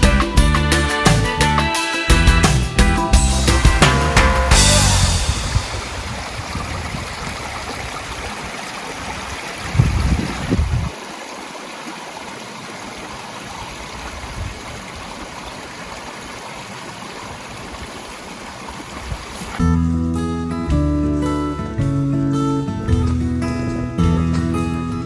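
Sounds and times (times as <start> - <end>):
stream running: 3.3 - 19.9.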